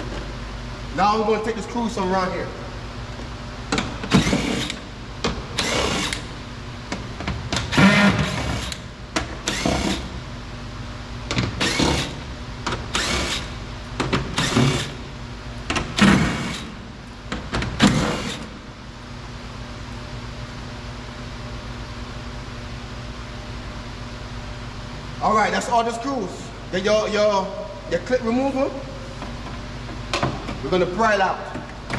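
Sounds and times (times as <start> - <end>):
cordless drill motor whining: 9.4 - 10.0, 12.9 - 13.5.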